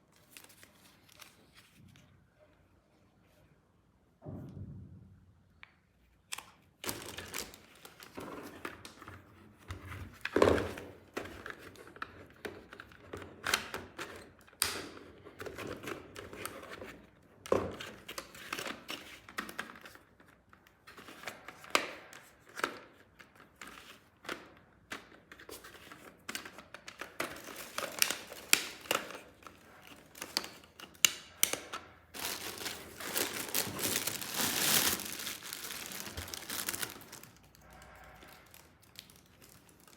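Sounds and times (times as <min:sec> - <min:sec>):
wrapping crinkling and tearing: 0:00.0 - 0:02.0, 0:06.8 - 0:09.0, 0:25.6 - 0:39.9.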